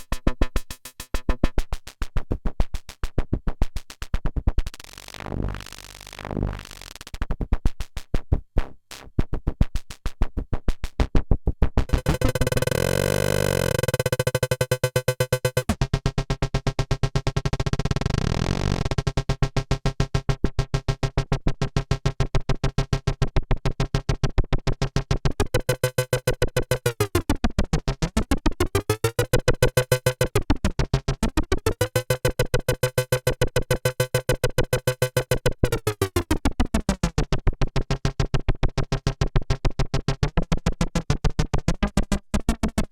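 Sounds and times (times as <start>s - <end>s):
synthesizer pulsing note: 11.9s - 15.7s, 25.4s - 27.3s, 28.4s - 30.6s, 31.3s - 36.9s
buzzy synth tone: 11.9s - 15.8s, 25.4s - 27.3s, 28.4s - 30.6s, 31.2s - 36.9s.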